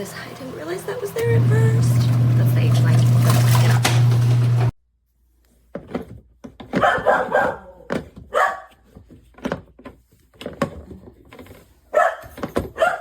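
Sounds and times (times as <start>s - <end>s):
plastic parts knocking and clattering: 5.6s - 12.8s.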